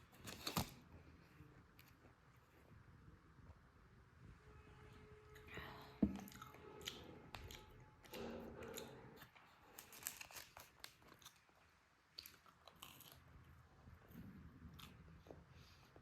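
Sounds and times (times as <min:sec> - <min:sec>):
crunchy chewing and biting: 0:06.2 - 0:13.7.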